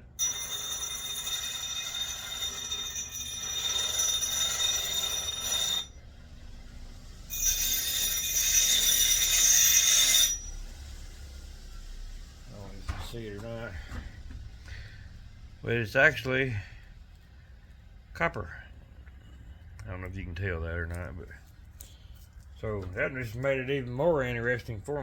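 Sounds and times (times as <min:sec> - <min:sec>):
power tool grinding metal: 0:00.2 - 0:13.7.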